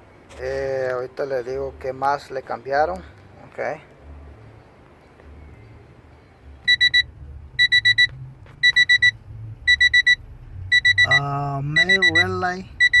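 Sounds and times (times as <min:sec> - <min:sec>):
electronic alarm beeping: 0:06.7 - 0:13.0.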